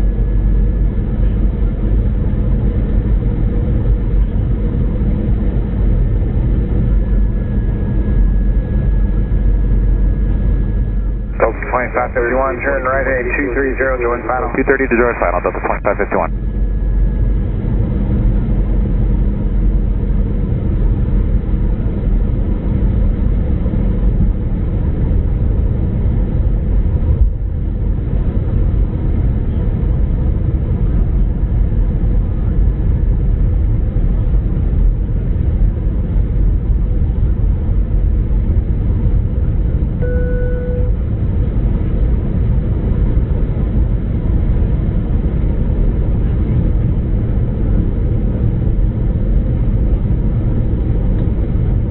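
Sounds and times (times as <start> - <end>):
airliner cabin rumble: 0.0 - 51.9
short beep: 40.0 - 41.0.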